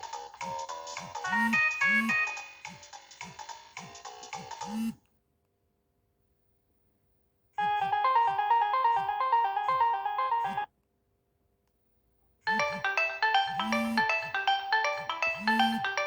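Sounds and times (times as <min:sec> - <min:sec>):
polyphonic ringtone melody: 0:07.6 - 0:10.7, 0:12.5 - 0:16.0.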